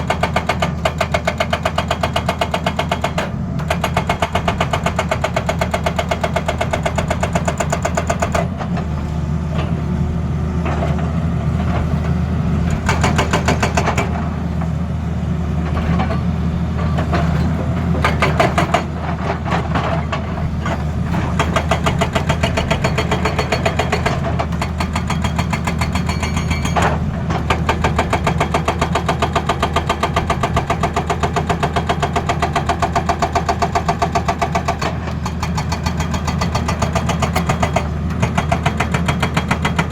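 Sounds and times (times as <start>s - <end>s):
diesel engine under load: 0.0s - 39.9s
hydraulic breaker hammering: 12.8s - 14.2s, 21.2s - 39.9s.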